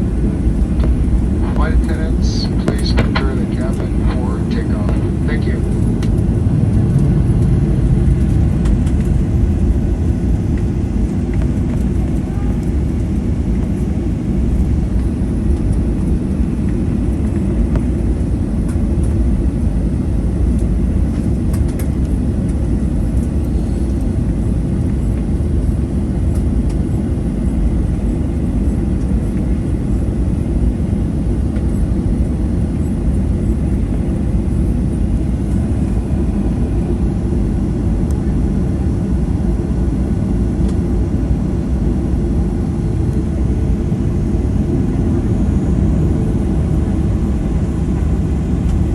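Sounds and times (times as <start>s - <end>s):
airplane cabin engine rumble: 0.0s - 48.9s.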